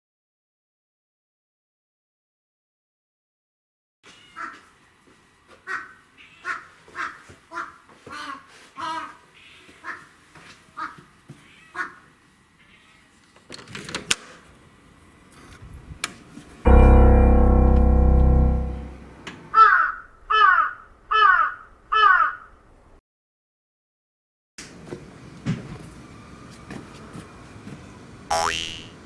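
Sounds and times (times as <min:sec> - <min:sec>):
crows cawing: 0:05.7 - 0:09.2, 0:19.6 - 0:22.5
loud sustained chord: 0:16.7 - 0:19.2.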